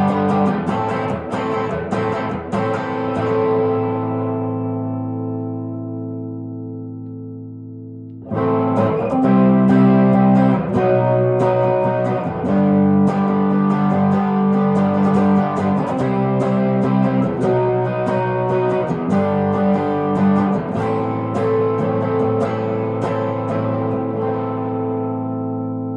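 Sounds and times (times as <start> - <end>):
electric guitar chords: 0.0 - 25.9.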